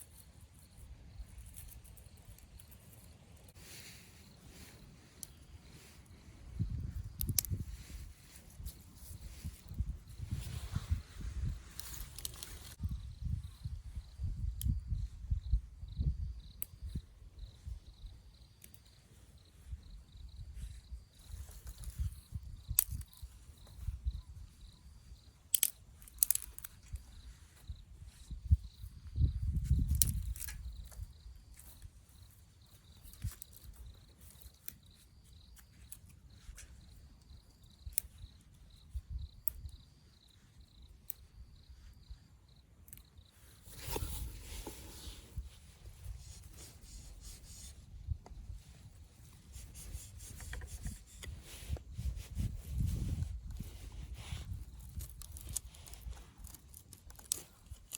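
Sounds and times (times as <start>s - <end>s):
insects chirping: 0.0s - 57.9s
sharp clicks and crackles: 7.0s - 7.8s, 11.7s - 12.8s, 22.7s - 23.3s, 25.4s - 27.0s, 54.8s - 57.9s
sharp clicks: 7.2s - 7.6s.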